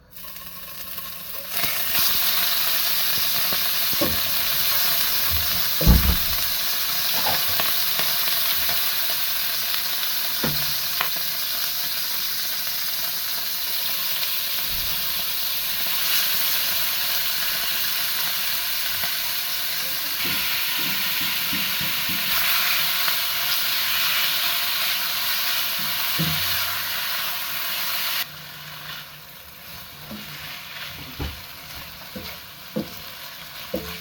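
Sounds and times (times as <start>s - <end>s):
food sizzling in a pan: 0.0s - 34.0s
utensil knocking against pan: 20.2s - 22.5s.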